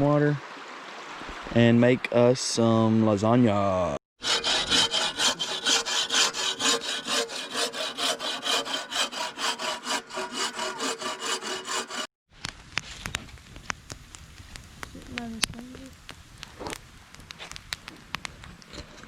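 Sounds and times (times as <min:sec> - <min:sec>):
hand saw cutting wood: 0:04.2 - 0:12.1.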